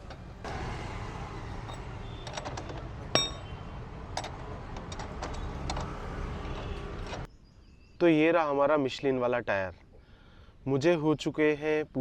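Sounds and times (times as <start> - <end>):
metal tools clinking: 1.6 - 3.6
sharp ringing clink: 3.2 - 3.5.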